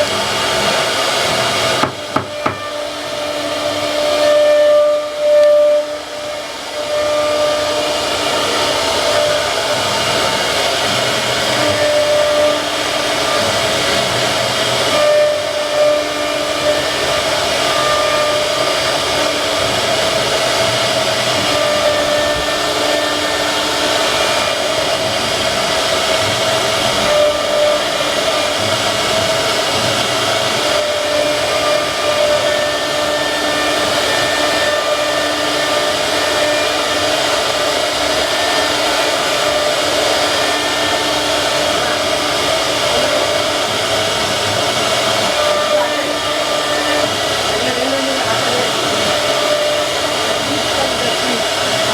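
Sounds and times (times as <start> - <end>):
cnc router cutting wood: 0.0 - 51.9.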